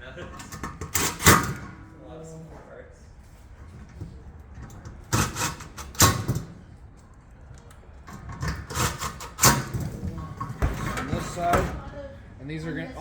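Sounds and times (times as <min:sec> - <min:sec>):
metal grill parts knocking: 0:00.2 - 0:01.8, 0:04.6 - 0:06.6, 0:08.1 - 0:11.8.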